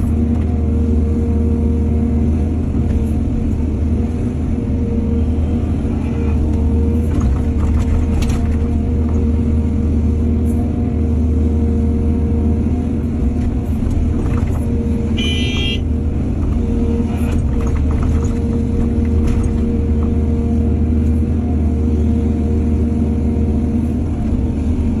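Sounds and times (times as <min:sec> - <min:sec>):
diesel excavator engine running: 0:00.0 - 0:25.0
knocks and clanks: 0:13.5 - 0:15.0, 0:16.4 - 0:20.1.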